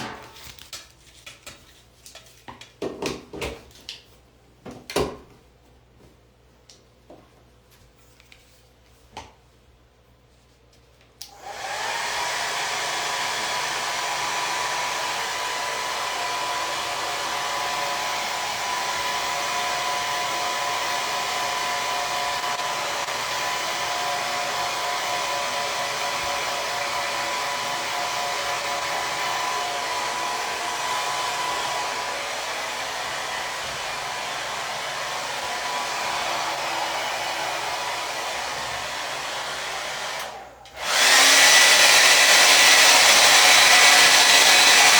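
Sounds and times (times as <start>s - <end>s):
hair dryer blowing: 0.0s - 0.2s, 11.2s - 44.9s.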